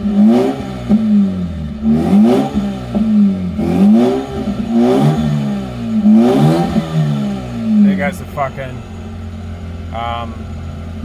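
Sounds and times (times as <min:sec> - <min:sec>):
rotary engine revving: 0:00.0 - 0:11.0.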